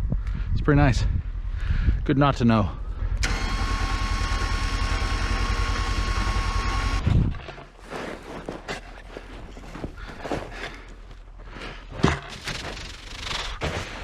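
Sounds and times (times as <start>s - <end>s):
engine running with high whine: 2.2s - 7.9s
engine shutting off with thud: 3.2s - 7.7s.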